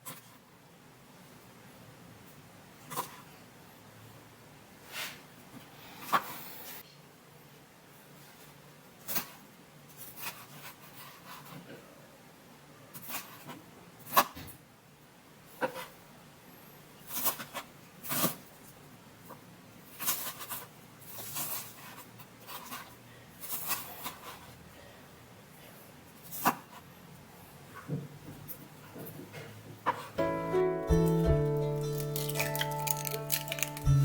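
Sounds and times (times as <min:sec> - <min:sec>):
sharp clicks of objects: 0:32.0 - 0:34.0.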